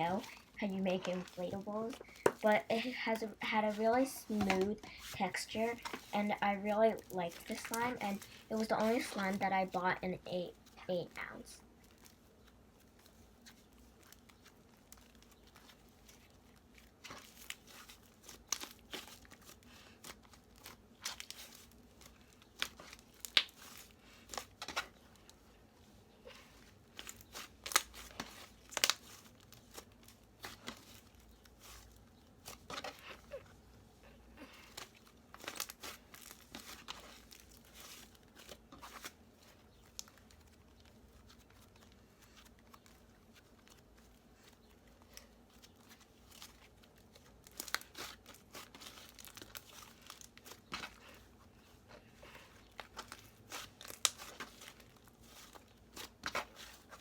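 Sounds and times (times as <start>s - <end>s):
slime crackling and popping: 13.7s - 25.0s, 26.9s - 33.1s, 34.6s - 43.8s, 44.4s - 51.2s, 52.8s - 57.0s.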